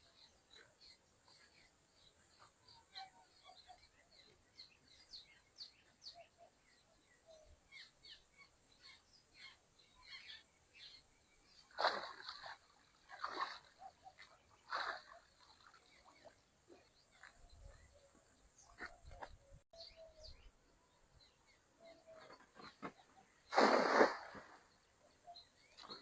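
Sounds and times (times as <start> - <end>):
birds chirping: 0.0 - 26.0.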